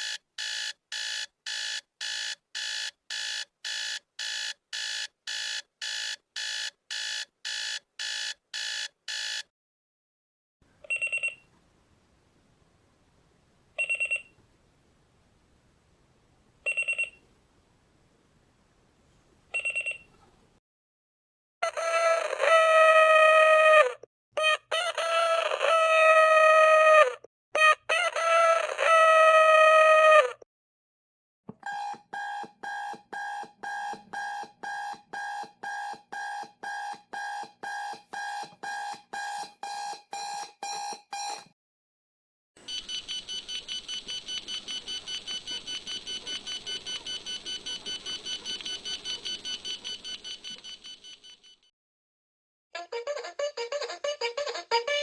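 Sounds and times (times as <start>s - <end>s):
electronic alarm beeping: 13.8s - 14.3s, 19.6s - 20.1s, 31.7s - 41.5s, 42.6s - 51.6s
rooster crowing alarm: 21.6s - 24.0s, 31.6s - 41.5s.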